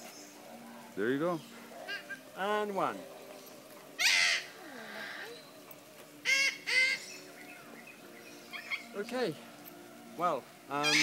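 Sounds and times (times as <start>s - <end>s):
birds calling loudly: 0.0s - 9.7s, 10.7s - 11.0s.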